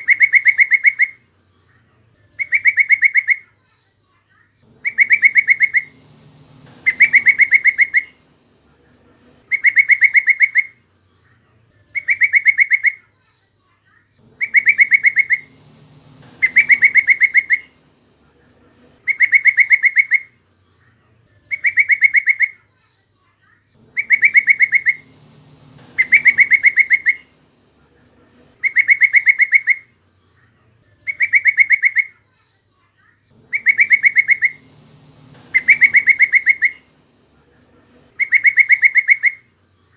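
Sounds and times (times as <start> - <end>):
bulbul bubbling chattering calls: 4.8 - 5.9, 6.8 - 8.1, 9.4 - 10.7, 14.4 - 15.5, 16.4 - 17.7, 19.0 - 20.3, 23.9 - 25.0, 26.0 - 27.2, 28.6 - 29.9, 33.4 - 34.6, 35.5 - 36.8, 38.1 - 39.4.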